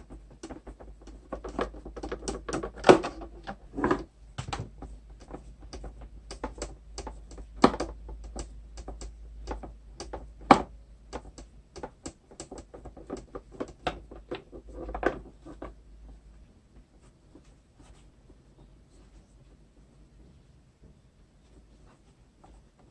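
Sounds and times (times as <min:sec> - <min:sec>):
clicks and knocks of plastic parts: 0:00.0 - 0:16.2.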